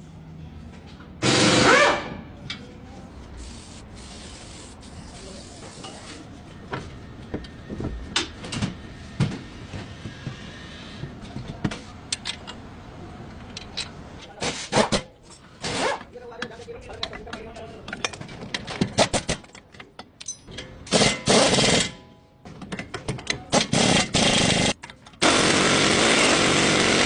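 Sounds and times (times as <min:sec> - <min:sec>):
loud short burst of noise: 0:01.2 - 0:02.2.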